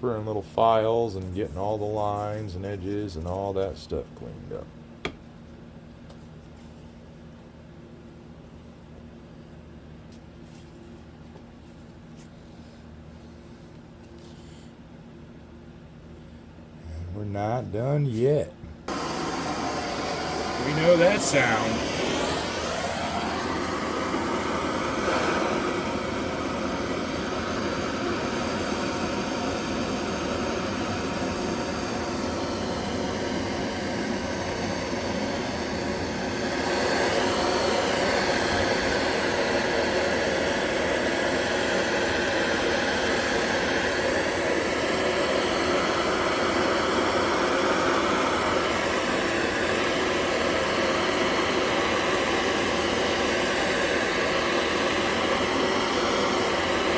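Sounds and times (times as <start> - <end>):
propane torch roaring: 16.9 - 56.9.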